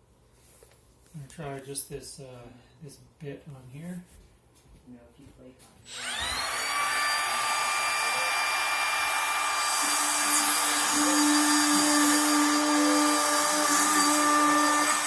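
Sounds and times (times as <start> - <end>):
electric router high whine: 5.8 - 15.0.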